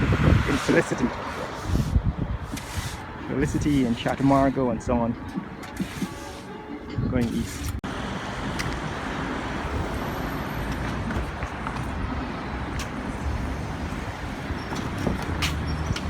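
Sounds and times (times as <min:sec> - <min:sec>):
highway traffic rumble: 0:00.0 - 0:16.0.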